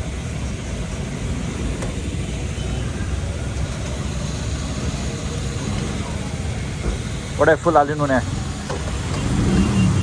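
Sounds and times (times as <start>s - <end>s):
road traffic rumble: 0.0s - 10.0s.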